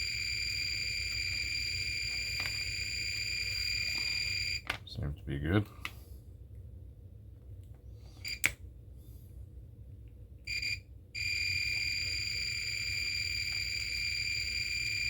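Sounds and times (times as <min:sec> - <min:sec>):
multimeter beeping: 0:00.0 - 0:04.6, 0:10.5 - 0:15.0.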